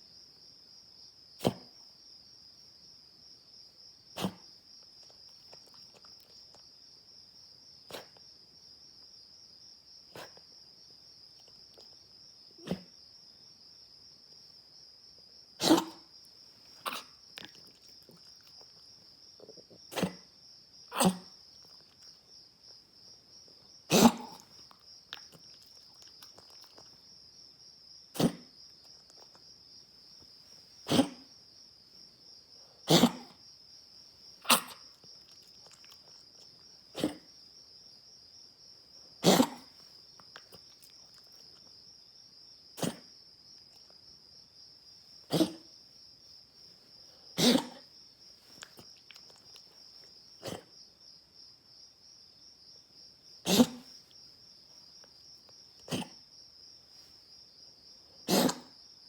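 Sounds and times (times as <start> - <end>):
night insects chirring: 0.0 - 59.0
dog coughing: 1.4 - 1.8, 4.2 - 4.4, 12.6 - 12.9, 15.6 - 16.1, 16.7 - 18.6, 19.7 - 20.3, 20.9 - 22.0, 23.9 - 26.9, 28.1 - 28.5, 30.8 - 31.3, 32.8 - 33.4, 34.4 - 36.2, 36.9 - 37.3, 39.2 - 41.2, 42.8 - 43.1, 45.2 - 45.7, 47.2 - 47.9, 50.4 - 50.7, 53.4 - 53.9, 55.8 - 56.2, 58.2 - 58.8.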